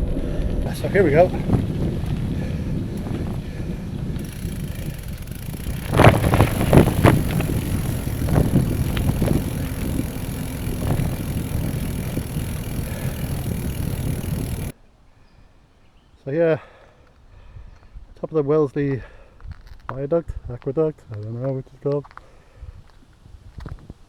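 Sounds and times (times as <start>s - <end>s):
bicycle knocks and rattles: 0.0s - 14.7s
wind rush on microphone: 0.0s - 14.7s
bicycle tyre noise: 0.0s - 14.8s.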